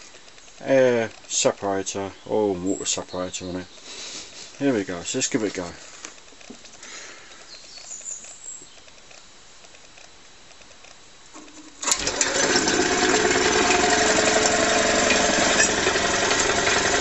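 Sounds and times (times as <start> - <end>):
air compressor running noisily: 11.4 - 17.0.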